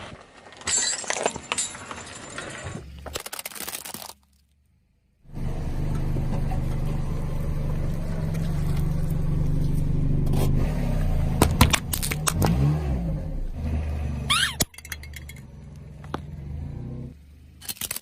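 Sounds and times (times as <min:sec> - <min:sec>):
objects cracking under tyres: 0:00.0 - 0:04.6, 0:11.4 - 0:12.7, 0:17.6 - 0:18.0
car engine running: 0:05.2 - 0:17.6
brief squeak: 0:14.3 - 0:14.7.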